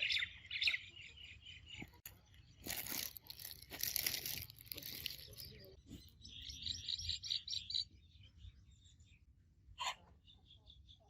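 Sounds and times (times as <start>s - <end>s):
bird chirping: 0.0s - 11.0s
rustling crunching noise: 1.9s - 6.1s.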